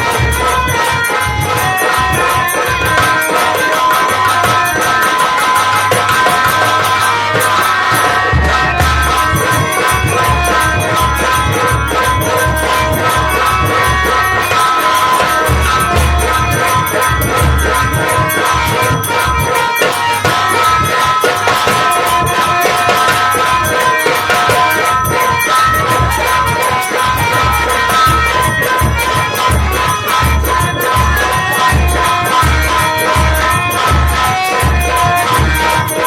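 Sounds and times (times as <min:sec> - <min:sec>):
jingling percussion: 0:00.0 - 0:36.0
low drum beating fast: 0:00.0 - 0:36.0
reed instrument melody: 0:00.0 - 0:36.0.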